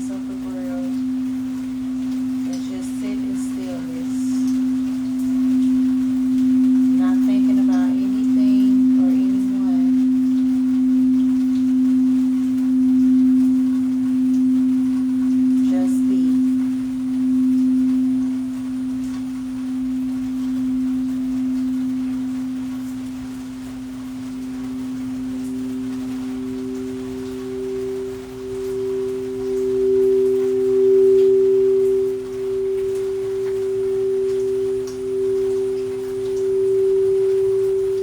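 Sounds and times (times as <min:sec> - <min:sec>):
singing bowl low tone: 0:00.0 - 0:38.0.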